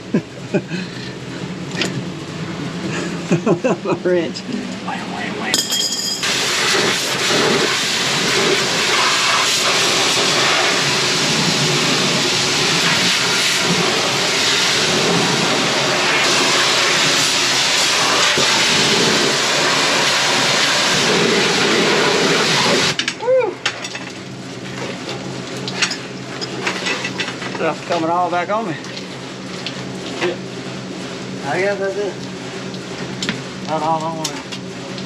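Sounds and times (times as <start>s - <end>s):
steam cleaner hissing jet: 6.2s - 23.0s.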